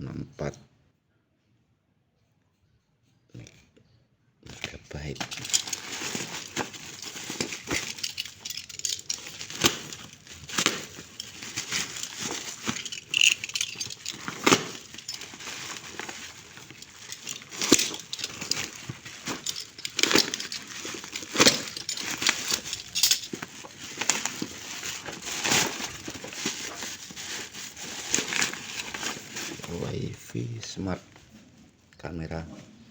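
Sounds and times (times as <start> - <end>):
plastic packaging rustling: 5.0 - 30.7.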